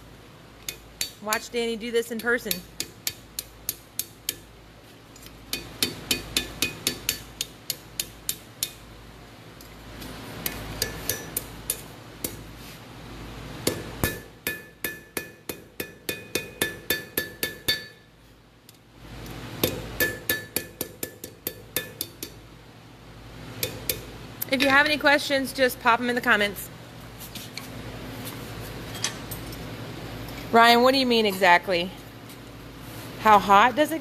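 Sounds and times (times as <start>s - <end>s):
hammer ringing on anvil: 14.0s - 18.0s, 19.7s - 22.4s.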